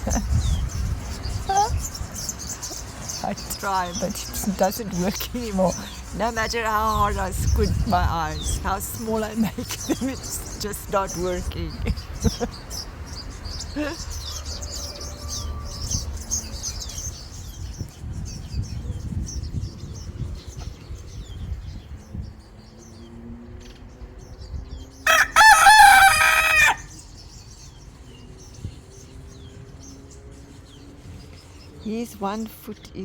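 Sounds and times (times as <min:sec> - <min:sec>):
faint small birds chirping: 0:00.0 - 0:33.0
rooster crowing: 0:14.2 - 0:16.3, 0:25.0 - 0:27.0.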